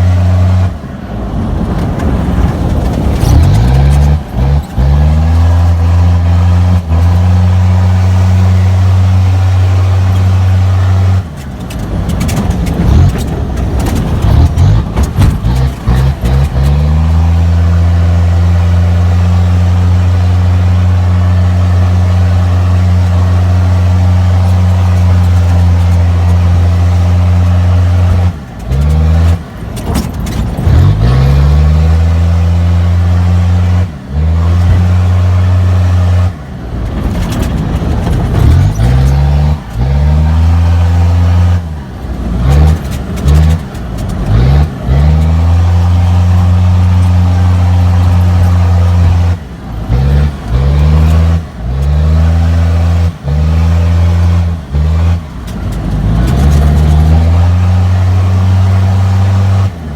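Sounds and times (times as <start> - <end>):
car engine revving: 0.0 - 59.9.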